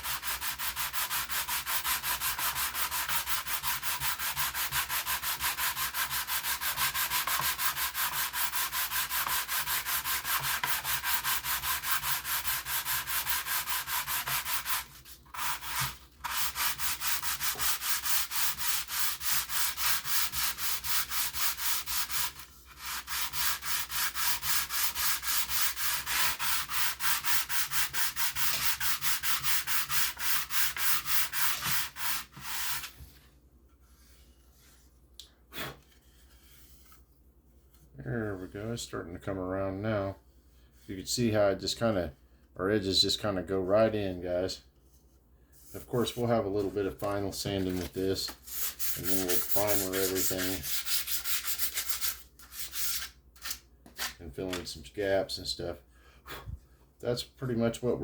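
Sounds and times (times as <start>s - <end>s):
plastic sheet being sanded: 0.0s - 33.0s, 46.8s - 53.2s.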